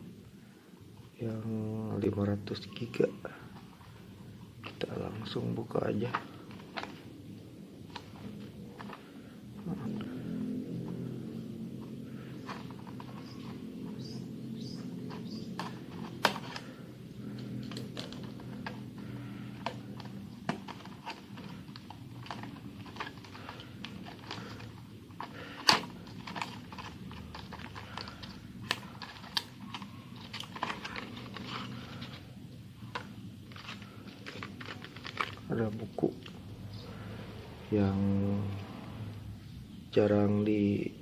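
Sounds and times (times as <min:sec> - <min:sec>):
low steady hum: 0:00.0 - 0:41.0
packaging clicks and taps: 0:11.8 - 0:32.2.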